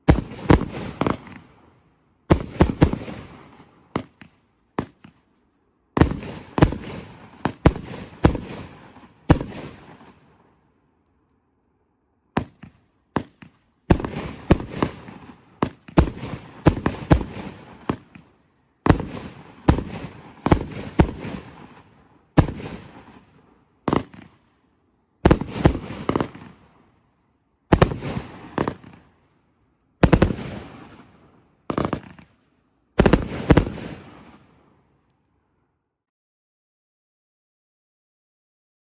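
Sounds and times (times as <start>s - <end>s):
firework bangs with echo: 0.1s - 1.5s, 2.3s - 5.1s, 6.0s - 10.2s, 12.4s - 18.2s, 18.9s - 21.8s, 22.4s - 23.1s, 23.9s - 24.3s, 25.3s - 26.7s, 27.7s - 29.0s, 30.0s - 31.1s, 33.0s - 34.4s.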